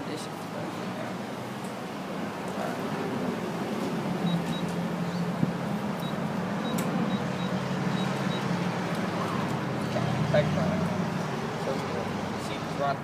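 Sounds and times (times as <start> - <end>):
keypad beeps: 4.2 - 4.7, 6.0 - 8.5.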